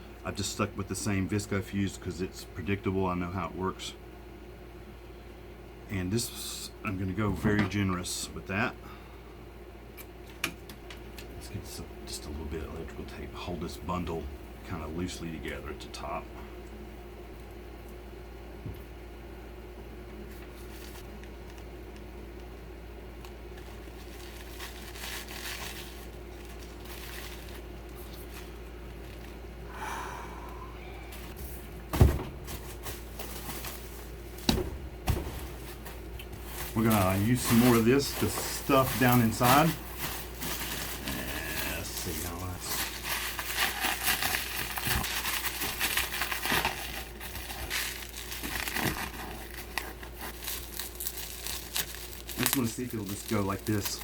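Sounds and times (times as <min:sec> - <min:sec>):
bubble wrap crinkling: 0:23.4 - 0:29.6, 0:32.4 - 0:54.0.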